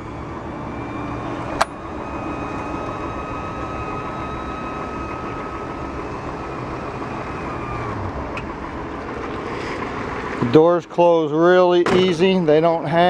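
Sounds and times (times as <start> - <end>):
electric motor whining: 0.0 - 10.2
car engine idling: 0.0 - 13.0.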